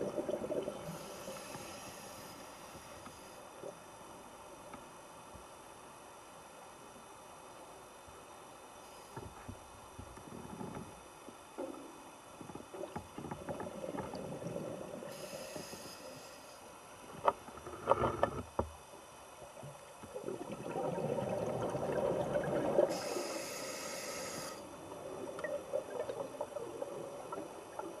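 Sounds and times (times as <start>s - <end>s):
regulator hissing inhalations: 0.9s - 3.5s, 15.1s - 16.7s, 22.9s - 24.6s.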